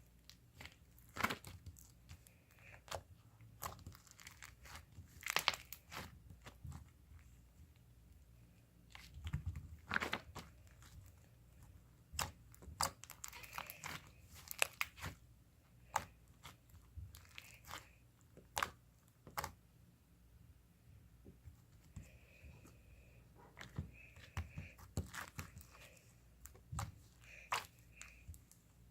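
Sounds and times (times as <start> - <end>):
close-up crunches and crackles: 0.2 - 6.9, 12.2 - 15.2, 15.8 - 19.5, 23.6 - 28.6.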